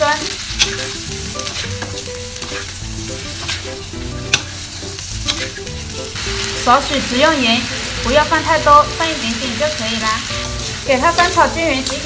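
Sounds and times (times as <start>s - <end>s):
food sizzling in a wok: 0.0s - 12.0s
spatula knocking against wok: 0.5s - 5.8s.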